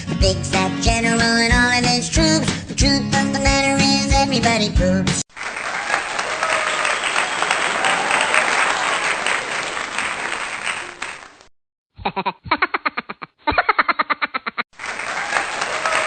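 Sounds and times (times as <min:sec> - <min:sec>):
applause: 0:05.3 - 0:11.5, 0:14.8 - 0:16.0.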